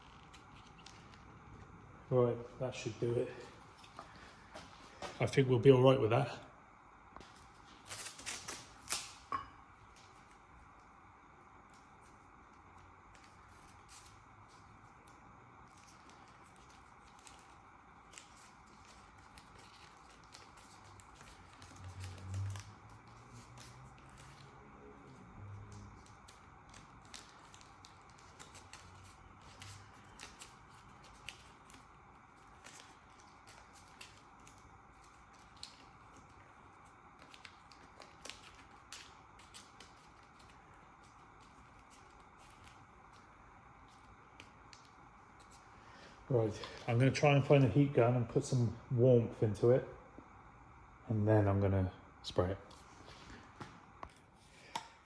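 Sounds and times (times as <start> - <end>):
steady background hiss: 0.0 - 55.0.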